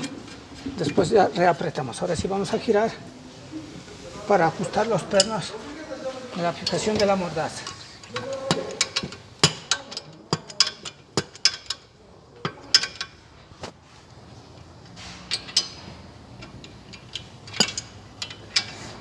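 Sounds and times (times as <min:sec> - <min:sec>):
wrench clicking on steel bolts: 0:06.5 - 0:13.7, 0:14.6 - 0:19.0.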